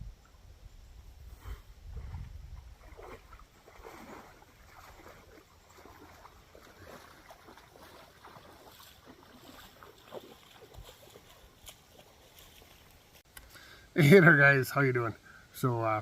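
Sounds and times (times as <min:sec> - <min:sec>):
water lapping: 0:01.4 - 0:13.2.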